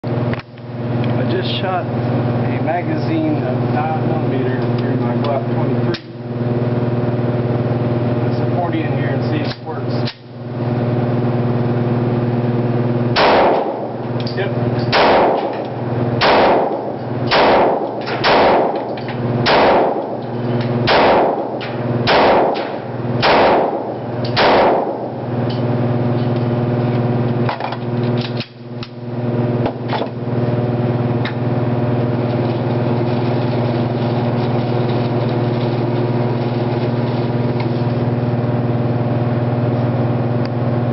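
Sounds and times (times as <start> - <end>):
low hum: 0.0 - 40.9
pistol shots: 13.2 - 14.0, 14.9 - 15.6, 16.2 - 20.2, 20.8 - 25.2.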